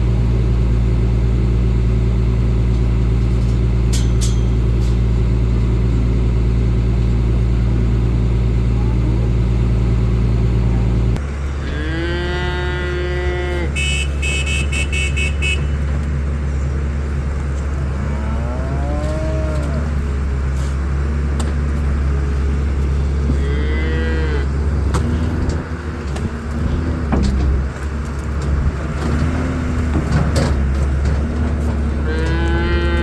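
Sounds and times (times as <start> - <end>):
vehicle engine running: 0.0 - 33.0
cattle mooing: 11.6 - 14.2, 17.8 - 20.2, 23.0 - 25.6, 31.8 - 33.0.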